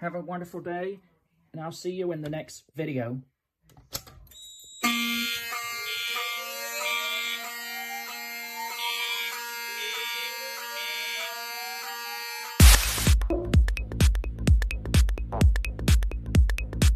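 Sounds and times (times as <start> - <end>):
pulsing alarm horn: 4.8 - 13.1
steady buzzing alarm tone: 4.8 - 13.2
electronic music with heavy beat: 12.6 - 16.9.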